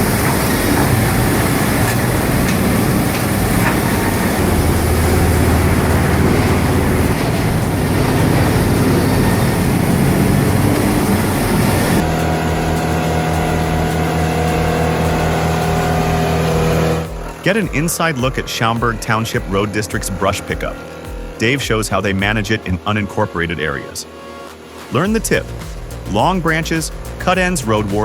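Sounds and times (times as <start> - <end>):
heavy machinery clattering: 0.0 - 21.6
engine drone: 0.0 - 28.0
held hum: 0.0 - 28.0.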